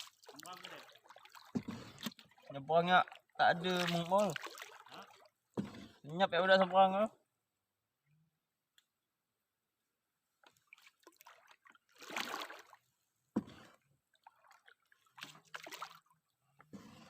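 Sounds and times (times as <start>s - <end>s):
water splashing at boat: 0.0s - 6.0s, 10.4s - 16.2s.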